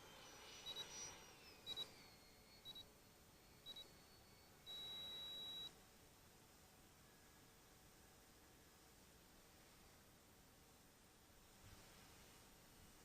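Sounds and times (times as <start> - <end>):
transmitter beeping: 0.0 - 5.8.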